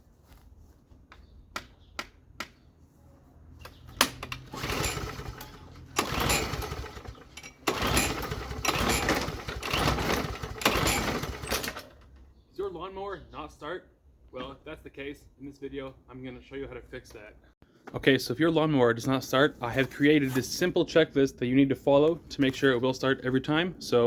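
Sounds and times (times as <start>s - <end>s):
lawn mower engine surging: 4.0s - 12.2s.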